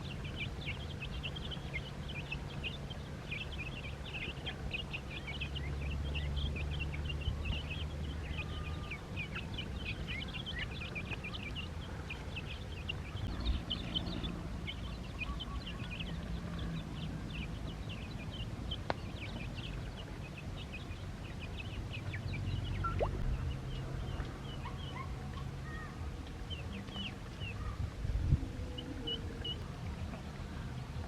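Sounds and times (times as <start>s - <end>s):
ducklings peeping: 0.0s - 31.0s
low hum: 22.6s - 24.2s.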